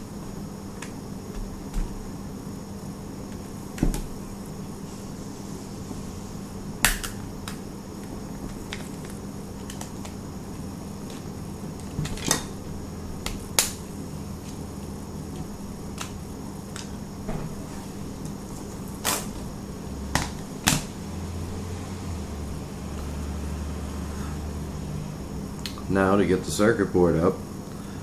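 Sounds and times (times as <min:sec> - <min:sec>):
steady low hum: 0:00.0 - 0:28.0
plastic clips snapping: 0:15.4 - 0:16.9.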